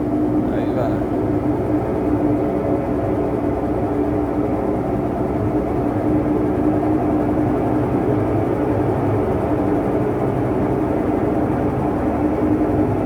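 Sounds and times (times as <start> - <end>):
washing machine spin cycle drone: 0.0 - 13.0.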